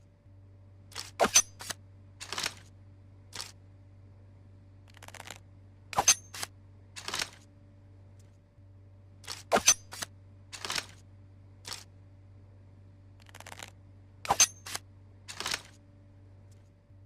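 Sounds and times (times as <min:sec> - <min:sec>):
dagger scraping swishes: 0:01.0 - 0:01.7, 0:06.0 - 0:06.5, 0:09.3 - 0:10.0, 0:14.3 - 0:14.8.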